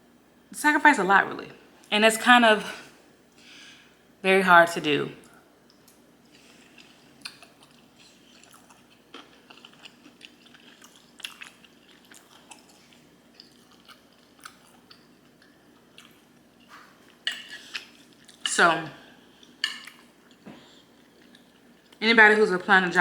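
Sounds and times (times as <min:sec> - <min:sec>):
person chewing: 0:05.7 - 0:18.5, 0:19.1 - 0:22.0.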